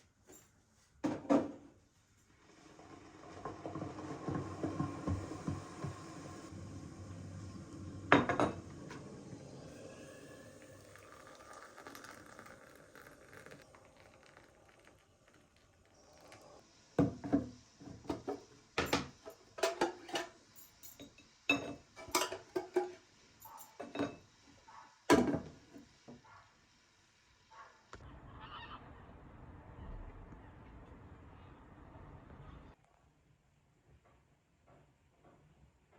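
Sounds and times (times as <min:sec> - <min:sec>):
dishes and utensils clattering: 0:17.3 - 0:24.2.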